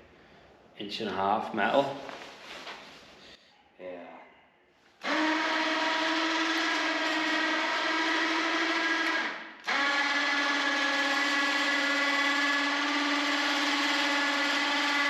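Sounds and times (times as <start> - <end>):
winch motor whining: 5.0 - 15.0.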